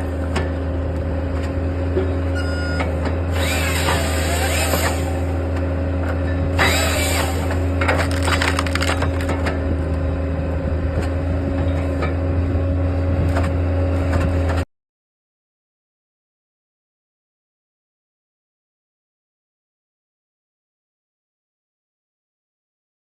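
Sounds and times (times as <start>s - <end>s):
engine and hydraulic drone: 0.0s - 14.7s
wood cracking and splintering: 6.6s - 9.6s.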